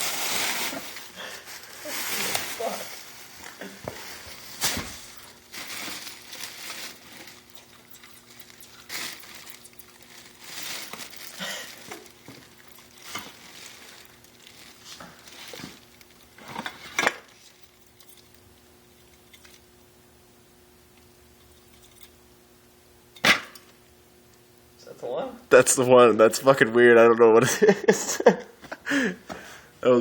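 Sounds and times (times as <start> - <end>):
small animal scratching in container: 5.0 - 11.3.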